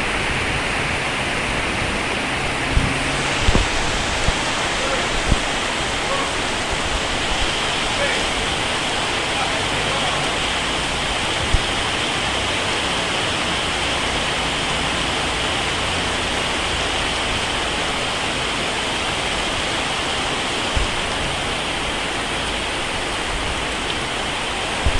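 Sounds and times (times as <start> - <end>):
heavy rain pouring: 0.0 - 24.9
low thumps: 2.6 - 8.5.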